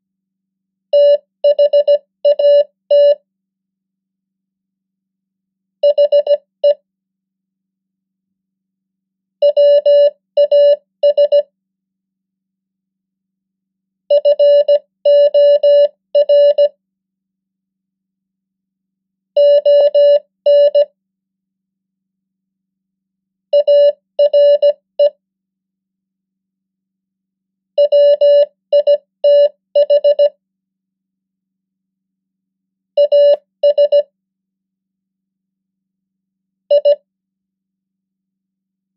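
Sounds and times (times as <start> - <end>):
morse code beeps: 9.4 - 11.4, 14.1 - 16.7, 19.4 - 20.9, 23.6 - 25.1, 27.8 - 30.3, 33.0 - 34.1, 36.7 - 37.0.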